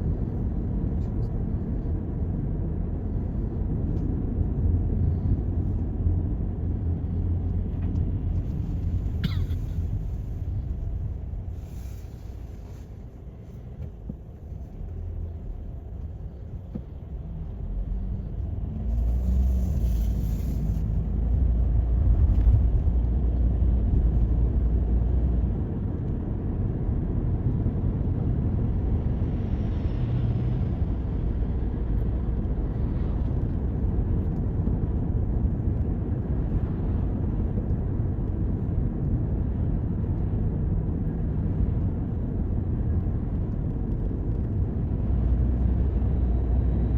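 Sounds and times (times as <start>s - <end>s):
car engine and tyre noise: 0.0s - 46.9s.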